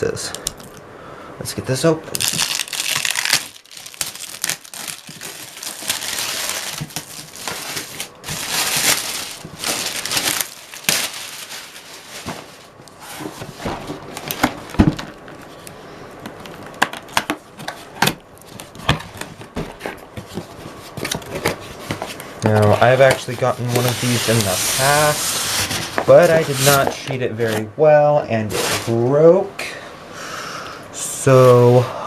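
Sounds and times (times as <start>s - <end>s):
cardboard packaging rustling: 2.2s - 27.7s.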